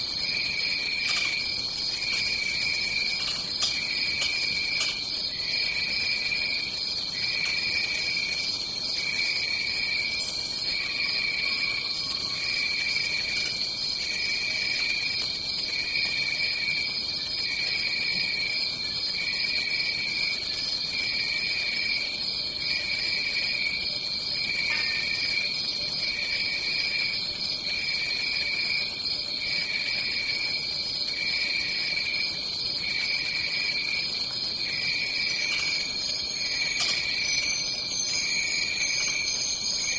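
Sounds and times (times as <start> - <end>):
high-pitched insect drone: 0.0 - 15.0, 31.2 - 39.9
chorus of calling insects: 0.0 - 39.9
insect trill: 0.0 - 39.9.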